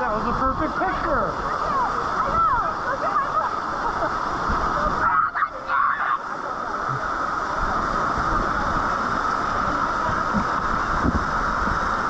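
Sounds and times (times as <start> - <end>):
waterfall roaring: 0.0 - 12.0
wind buffeting microphone: 6.8 - 12.0.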